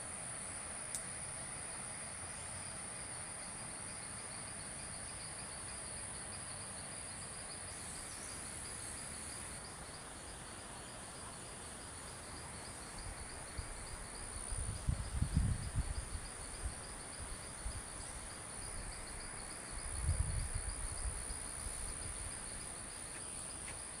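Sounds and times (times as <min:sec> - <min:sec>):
pulsing insect chirp: 0:00.1 - 0:24.0
insect chorus trilling: 0:01.6 - 0:24.0.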